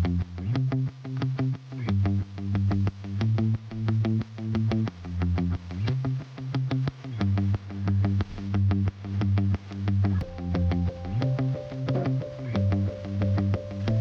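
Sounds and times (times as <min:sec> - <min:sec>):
electronic synthesizer music: 0:10.2 - 0:14.0.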